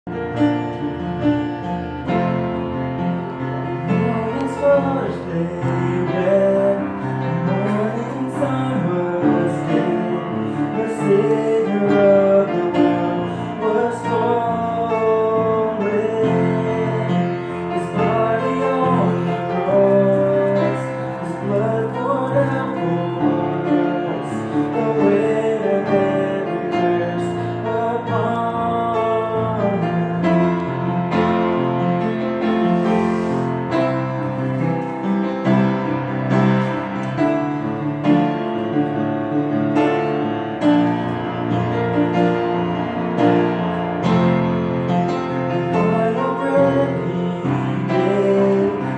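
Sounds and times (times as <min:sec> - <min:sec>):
piano: 0:00.0 - 0:48.9
person singing: 0:03.7 - 0:31.4, 0:45.6 - 0:48.9.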